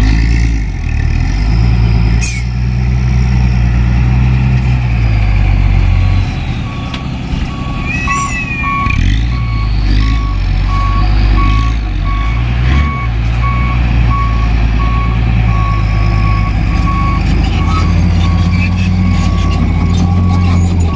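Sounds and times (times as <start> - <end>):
diesel engine running: 0.0 - 20.9
reversing alarm beeping: 4.6 - 20.9
high warbling tone: 5.6 - 12.4.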